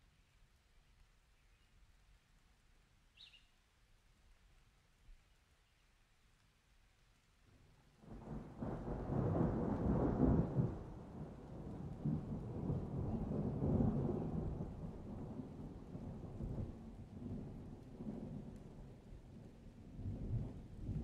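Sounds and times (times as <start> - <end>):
thunder rumbling: 8.0 - 21.0.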